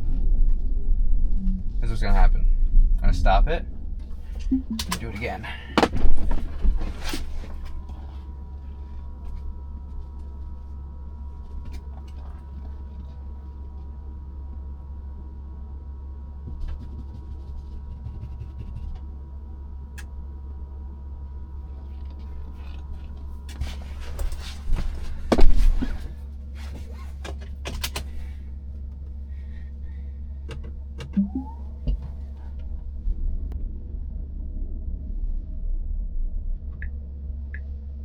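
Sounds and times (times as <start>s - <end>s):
road rumble inside car: 0.0s - 38.0s
knocks and thumps: 4.4s - 8.0s, 23.5s - 28.1s
clicks: 30.5s - 32.1s.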